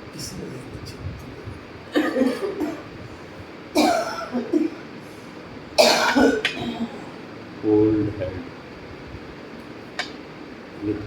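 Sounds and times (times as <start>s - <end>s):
woman coughing: 1.9s - 2.9s, 3.8s - 4.9s, 5.8s - 7.0s.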